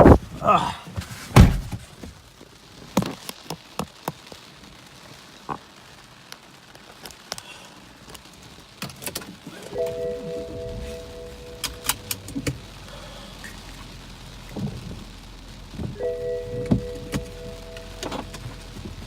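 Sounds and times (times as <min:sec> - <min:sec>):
heavy thump: 0:01.3 - 0:01.8
raindrops tapping: 0:02.2 - 0:19.0
electronic chime: 0:09.7 - 0:12.3, 0:16.0 - 0:18.8.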